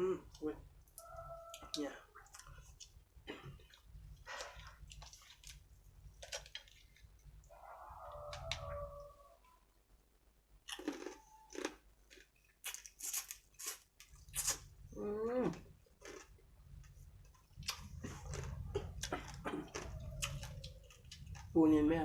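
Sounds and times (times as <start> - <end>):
crunching and chewing crab shell: 2.2 - 7.1, 10.6 - 14.7, 15.8 - 21.6.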